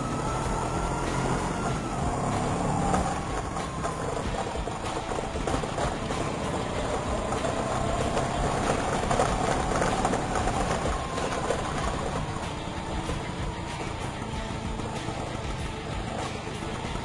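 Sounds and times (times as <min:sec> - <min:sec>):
siren-like whistling tone: 0:00.0 - 0:04.8
scooter engine running: 0:00.0 - 0:17.0.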